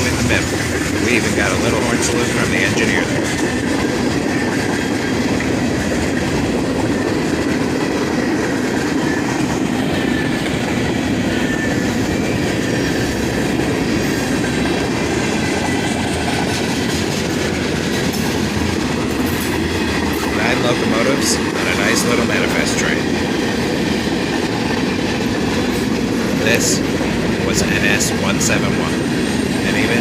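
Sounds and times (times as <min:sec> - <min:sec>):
train wheels rumbling on rail: 0:00.0 - 0:30.0.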